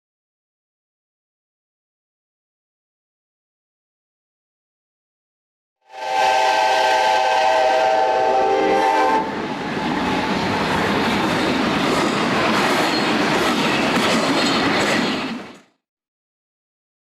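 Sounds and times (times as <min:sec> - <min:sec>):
train horn: 0:05.9 - 0:09.4
train rumbling and clattering: 0:07.6 - 0:15.8.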